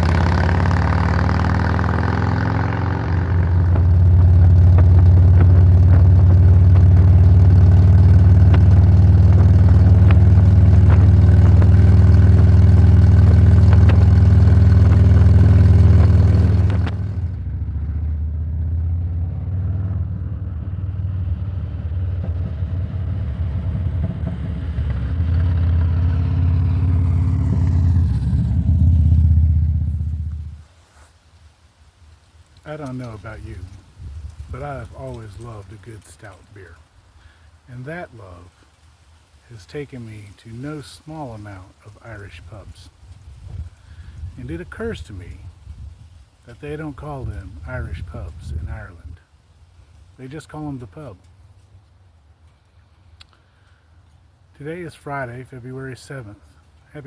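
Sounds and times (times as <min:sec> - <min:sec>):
motorcycle engine running: 0:00.0 - 0:30.7.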